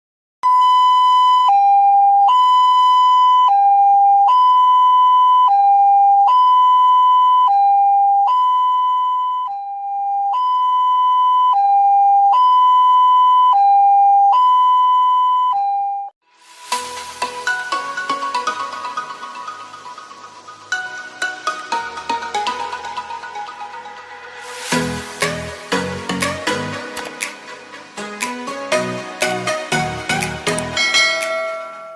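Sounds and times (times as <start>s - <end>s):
ambulance two-tone siren: 0.4s - 16.2s.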